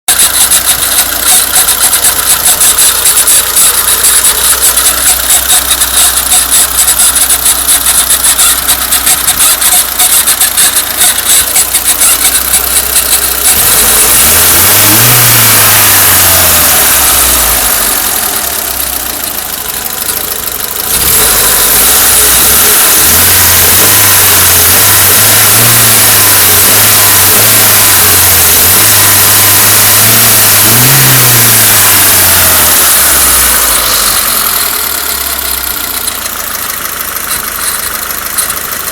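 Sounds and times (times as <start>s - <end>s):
fast rhythmic belt squeak: 0.1s - 15.1s, 33.1s - 38.9s
car engine running and revving: 0.1s - 38.9s.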